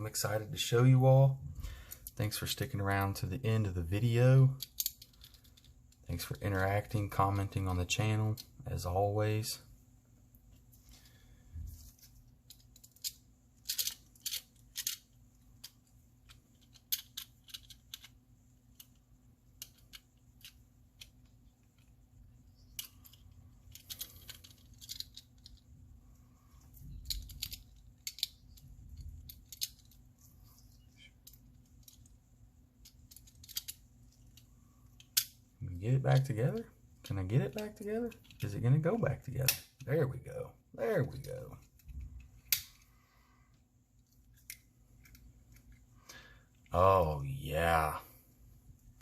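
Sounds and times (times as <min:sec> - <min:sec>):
small parts clicking: 0:04.5 - 0:06.1, 0:12.4 - 0:22.0, 0:22.6 - 0:25.8, 0:26.5 - 0:32.2, 0:32.8 - 0:35.4, 0:37.5 - 0:38.5, 0:43.5 - 0:46.8.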